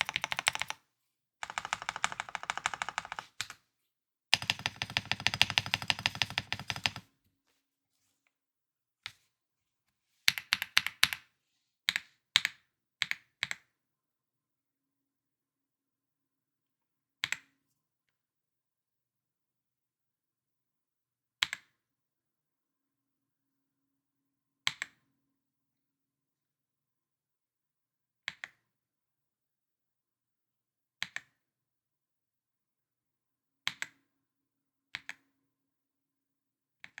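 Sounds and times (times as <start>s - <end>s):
mechanical keyboard typing: 0.0s - 0.8s, 1.4s - 3.6s, 4.4s - 7.0s, 10.3s - 11.2s.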